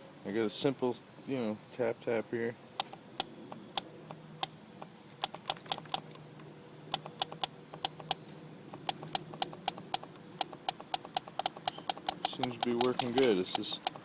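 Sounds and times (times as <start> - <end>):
fuel pump ticking: 2.8 - 6.2, 6.9 - 14.0.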